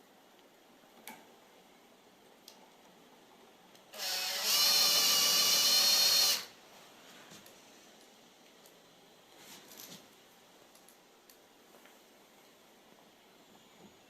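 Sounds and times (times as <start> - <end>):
electric drill driving a screw: 3.9 - 6.6.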